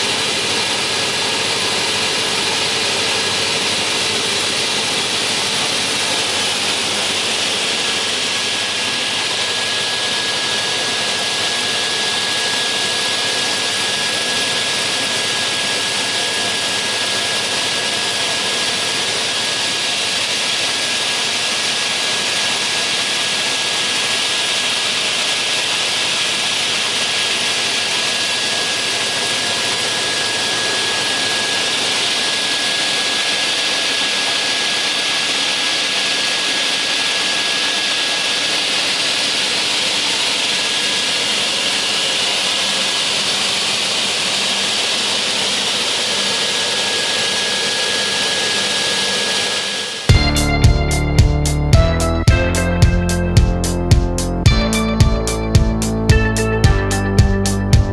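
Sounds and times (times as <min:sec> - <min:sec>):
saw running with hiss and whine: 0:00.0 - 0:54.4.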